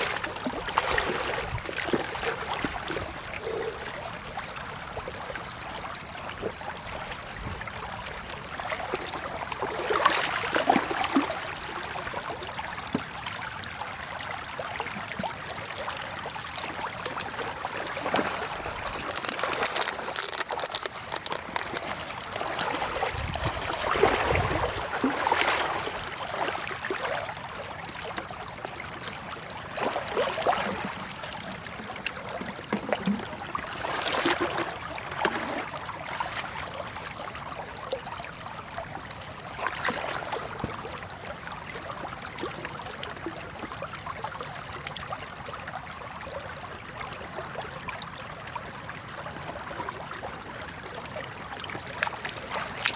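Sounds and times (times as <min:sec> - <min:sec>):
water splashes: 0:00.0 - 0:45.7, 0:47.2 - 0:52.9
floodwater running and trickling: 0:00.0 - 0:52.9.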